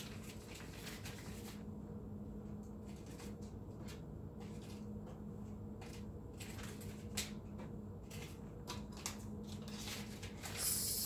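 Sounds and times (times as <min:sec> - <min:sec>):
steady low hum: 0:10.5 - 0:11.0.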